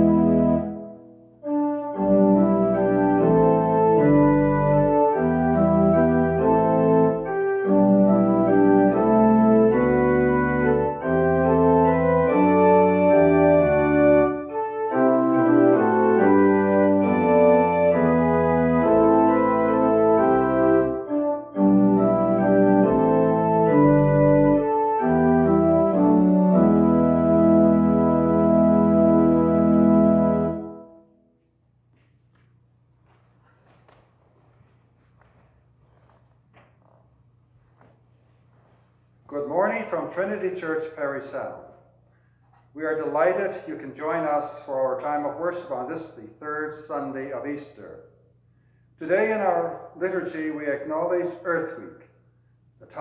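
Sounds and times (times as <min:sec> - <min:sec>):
organ playing held chords: 0:00.0 - 0:31.4.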